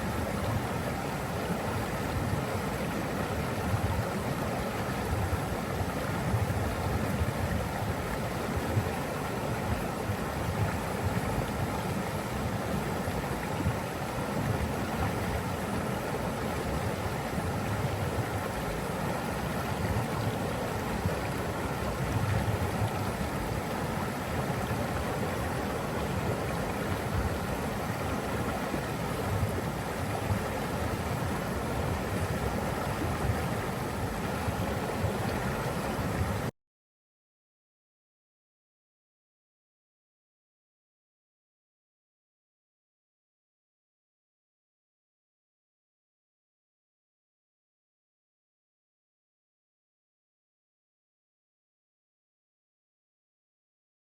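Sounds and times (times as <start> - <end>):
rushing water: 0.0 - 36.5.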